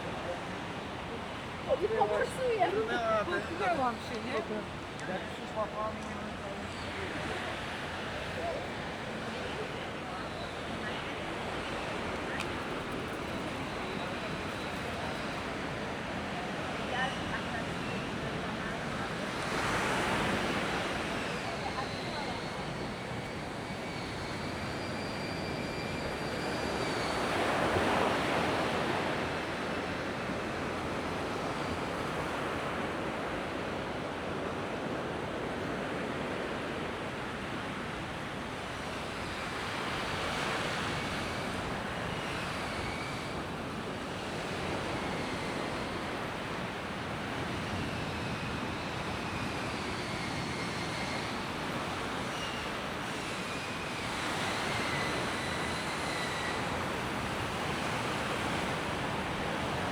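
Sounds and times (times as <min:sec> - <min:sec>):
waves breaking on a beach: 0:00.0 - 0:59.9
faint high whine: 0:02.9 - 0:59.9.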